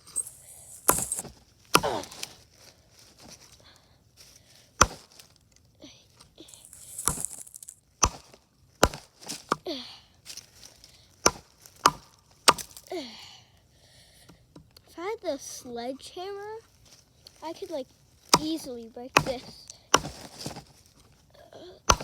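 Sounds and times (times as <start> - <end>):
axe chopping into a log: 0.9 - 2.3, 4.8 - 5.2, 6.7 - 9.6, 11.2 - 12.8, 19.2 - 20.6.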